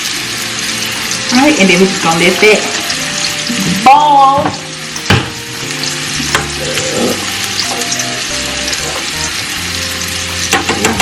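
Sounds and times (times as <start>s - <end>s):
food sizzling on stove: 0.0s - 11.0s
pot boiling: 0.0s - 11.0s.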